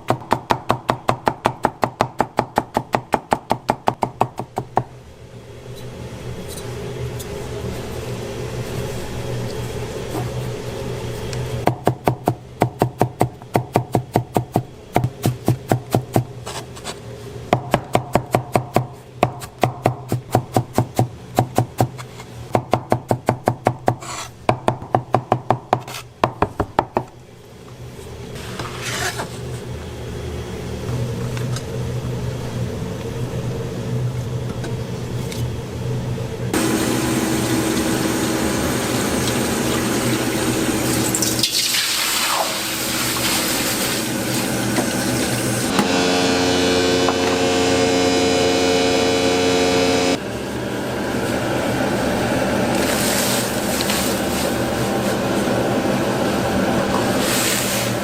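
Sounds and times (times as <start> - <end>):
low hum of burner or fan: 0.0 - 58.0.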